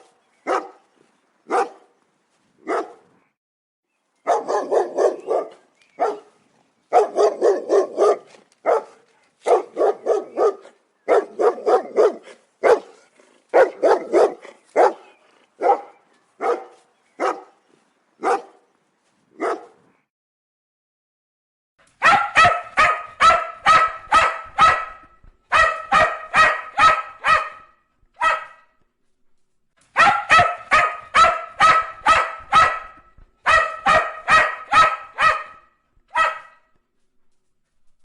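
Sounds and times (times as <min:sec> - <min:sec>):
dog barking: 0:00.4 - 0:00.8, 0:01.5 - 0:01.9, 0:02.6 - 0:03.1, 0:04.2 - 0:06.3, 0:06.9 - 0:17.6, 0:18.2 - 0:18.6, 0:19.4 - 0:19.8, 0:22.0 - 0:28.8, 0:30.0 - 0:36.7.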